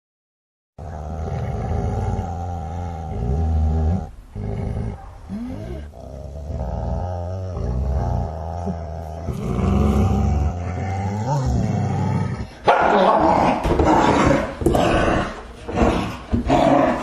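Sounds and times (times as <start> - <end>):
dog growling: 0.8 - 17.0.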